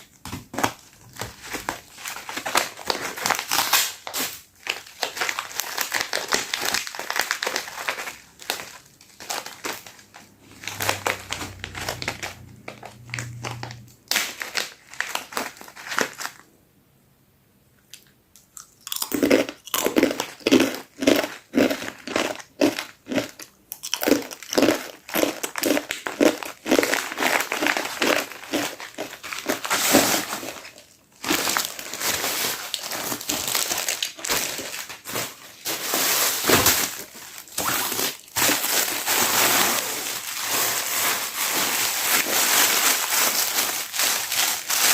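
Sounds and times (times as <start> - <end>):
plastic packaging crinkling: 0.0 - 16.5, 23.9 - 44.9.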